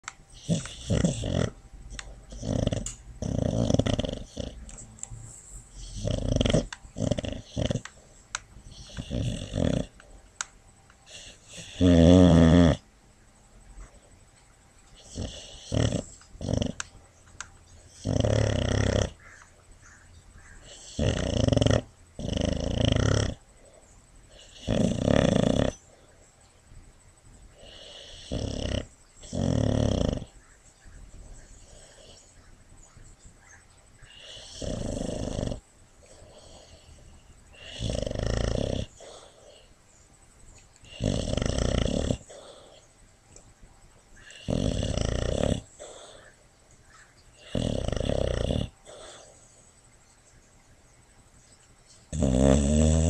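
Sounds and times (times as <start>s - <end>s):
dog snoring: 0.0s - 10.2s, 11.1s - 12.8s, 14.9s - 16.9s, 17.8s - 19.4s, 20.5s - 25.9s, 27.5s - 30.5s, 31.4s - 32.4s, 34.0s - 39.7s, 40.8s - 42.8s, 44.2s - 46.4s, 47.4s - 49.6s, 52.1s - 53.0s.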